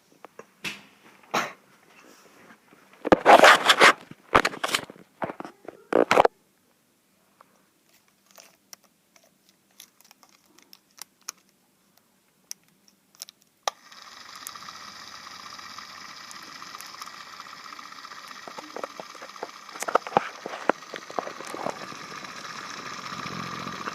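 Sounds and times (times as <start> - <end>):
small motor whining: 13.7 - 23.9.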